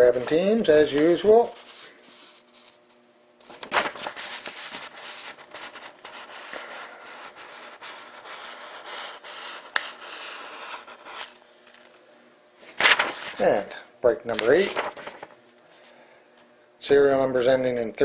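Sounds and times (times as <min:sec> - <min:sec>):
handling rustling and scraping: 0:12.6 - 0:13.6.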